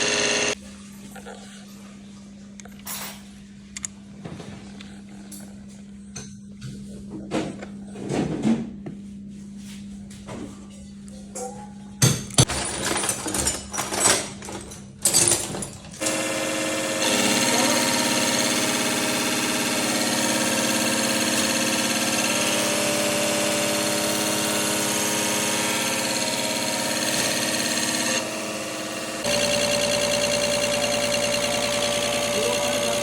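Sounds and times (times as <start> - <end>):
machinery humming: 0.0 - 0.6, 16.0 - 33.0.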